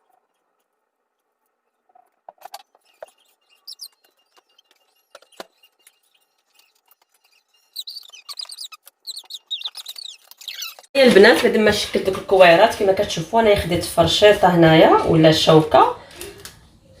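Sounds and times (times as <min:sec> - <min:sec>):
small bird chirping: 0:02.7 - 0:10.9.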